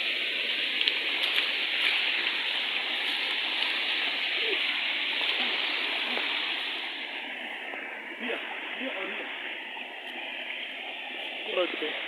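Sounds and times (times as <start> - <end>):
water rushing: 0.0 - 12.0.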